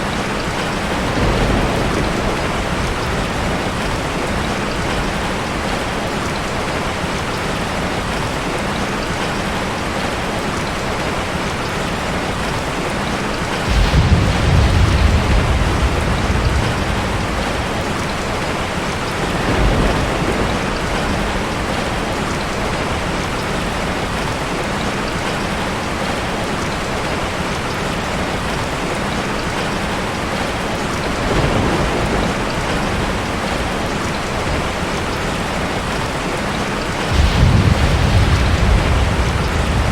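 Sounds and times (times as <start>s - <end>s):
low rumbles of thunder: 0.0s - 7.0s, 13.5s - 24.3s, 31.0s - 36.1s, 36.8s - 39.9s
steady rain falling: 0.0s - 39.9s.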